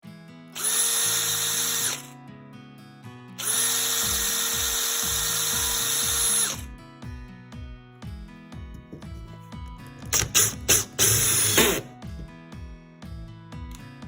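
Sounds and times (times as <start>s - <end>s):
cordless drill whining: 0.6s - 2.1s, 3.4s - 6.7s, 10.2s - 11.9s
background music: 3.2s - 14.0s.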